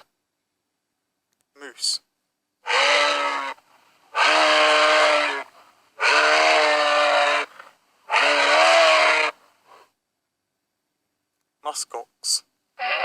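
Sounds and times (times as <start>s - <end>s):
moose calling: 2.6s - 9.8s, 12.8s - 13.0s.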